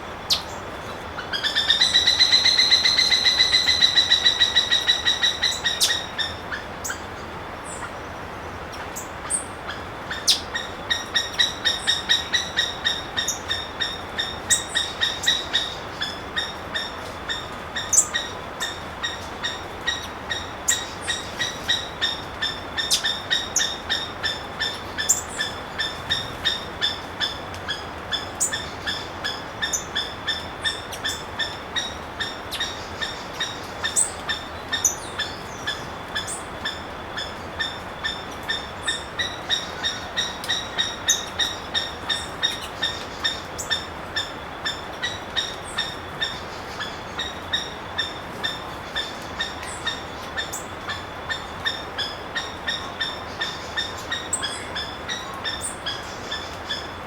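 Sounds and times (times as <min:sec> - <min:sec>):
small birds chirping faintly: 0:00.0 - 0:57.0
bird yelping calls: 0:01.3 - 0:07.0.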